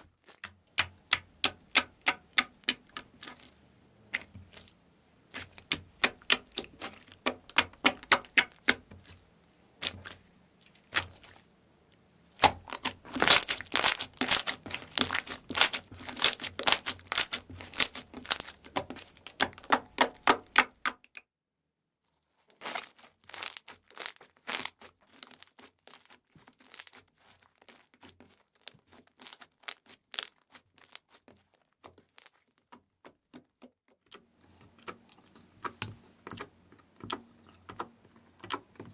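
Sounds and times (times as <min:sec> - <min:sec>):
slime clicking and popping: 0:00.0 - 0:04.7, 0:05.3 - 0:09.2, 0:12.4 - 0:21.2, 0:22.6 - 0:27.0, 0:34.1 - 0:38.9.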